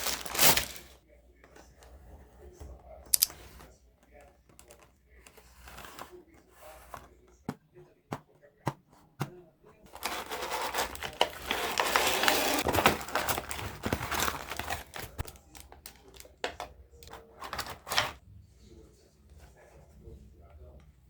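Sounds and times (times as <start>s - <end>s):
packaging crinkling and rustling: 0.0s - 1.0s, 9.9s - 18.2s.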